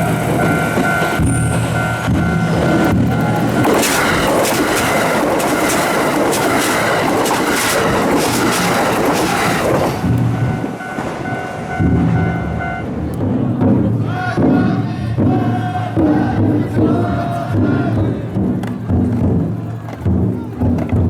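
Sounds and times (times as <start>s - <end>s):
crossing warning bell ringing: 0.0s - 13.6s
train wheels clattering: 0.0s - 21.0s.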